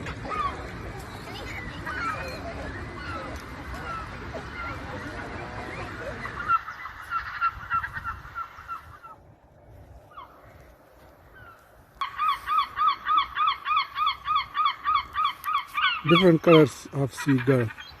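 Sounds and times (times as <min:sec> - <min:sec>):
gulls calling: 0:00.0 - 0:09.3, 0:10.0 - 0:18.0
gull yelping calls: 0:11.4 - 0:16.6.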